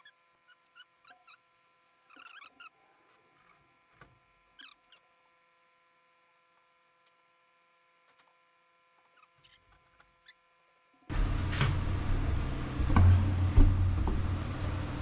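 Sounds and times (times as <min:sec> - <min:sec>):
small squeaks: 0:00.0 - 0:03.8, 0:04.4 - 0:05.2, 0:09.0 - 0:10.5
faint steady hum: 0:00.0 - 0:15.0.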